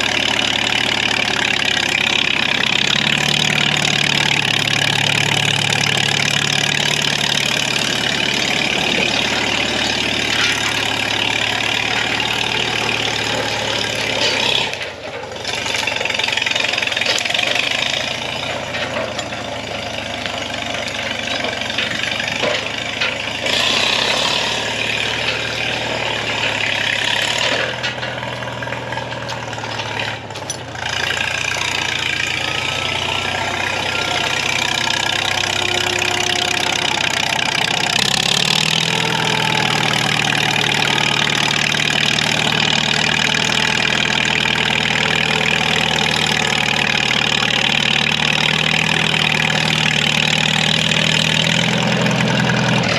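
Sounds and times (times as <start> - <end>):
tractor engine running: 0.0 - 52.9.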